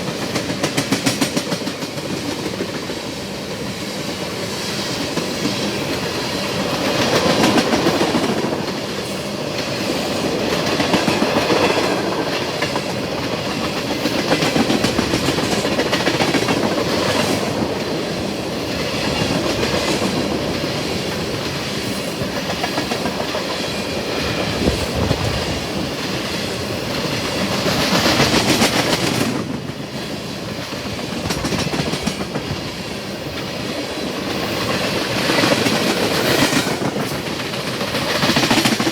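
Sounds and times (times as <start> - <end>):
freight train wheels clacking: 0.0 - 38.9.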